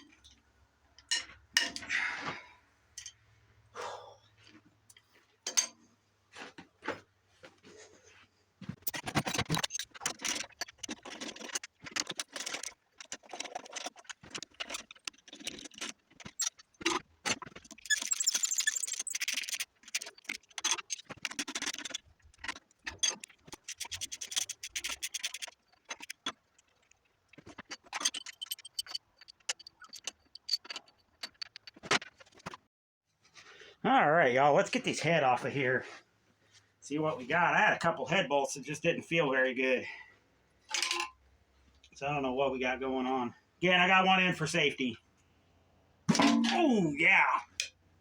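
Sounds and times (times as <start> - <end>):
metal clinking: 27.8 - 31.8, 40.7 - 41.2, 46.1 - 46.8
socket wrench ratcheting: 28.0 - 31.7.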